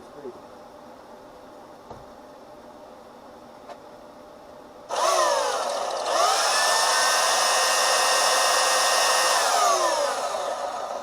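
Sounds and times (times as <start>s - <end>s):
electric power sander running: 4.9s - 11.0s.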